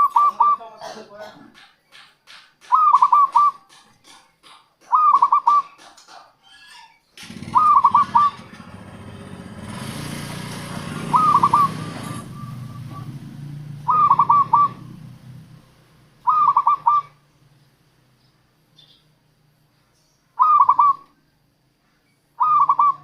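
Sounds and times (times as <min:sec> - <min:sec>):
dove cooing: 0:00.0 - 0:01.0, 0:02.7 - 0:03.8, 0:04.8 - 0:06.2, 0:07.3 - 0:08.7, 0:10.8 - 0:13.2, 0:13.8 - 0:15.2, 0:16.2 - 0:17.2, 0:20.4 - 0:21.2, 0:22.4 - 0:23.0.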